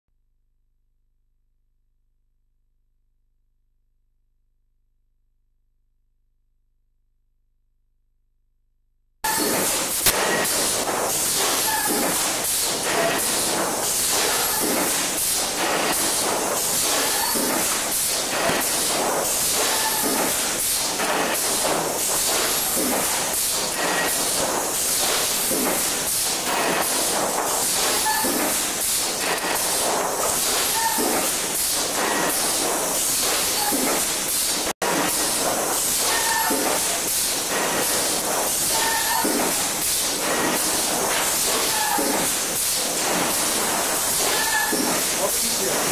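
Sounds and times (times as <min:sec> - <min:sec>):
machine running with hiss: 0:09.3 - 0:45.9.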